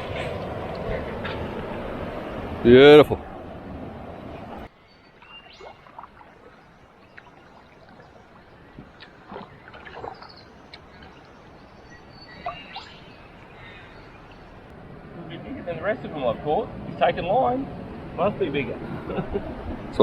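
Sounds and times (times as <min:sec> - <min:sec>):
bird chirps and calls: 0:04.7 - 0:14.6.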